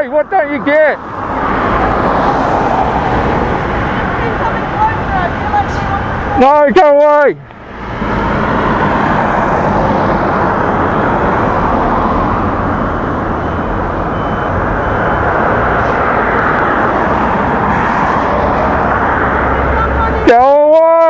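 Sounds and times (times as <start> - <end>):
loud vehicle noise: 0.0 - 21.0.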